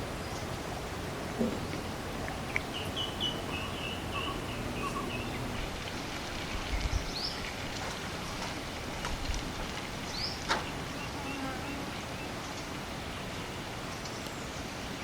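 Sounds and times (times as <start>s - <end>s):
steady outdoor hiss: 0.0s - 15.0s
small bird singing: 2.3s - 5.7s.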